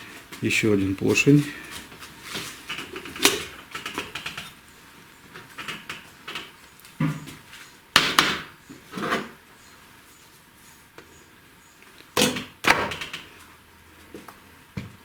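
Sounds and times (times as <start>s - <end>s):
knocks of engine parts: 8.0s - 8.5s, 12.2s - 13.3s.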